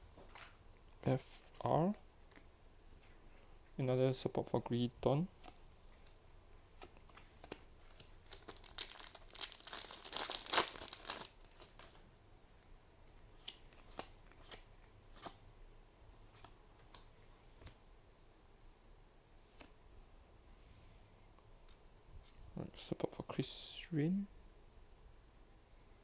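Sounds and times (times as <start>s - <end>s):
foil wrapper crinkling and tearing: 7.5s - 12.0s.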